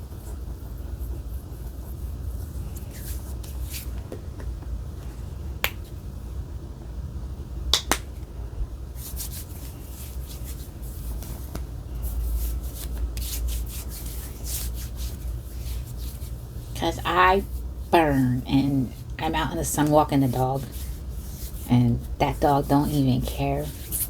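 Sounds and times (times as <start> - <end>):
hands rubbing lotion: 9.0 - 24.0.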